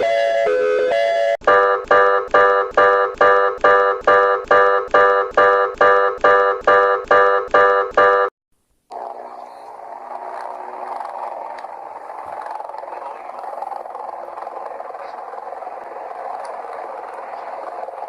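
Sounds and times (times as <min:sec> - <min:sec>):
pulsed electronic alarm chord: 0:00.0 - 0:08.3.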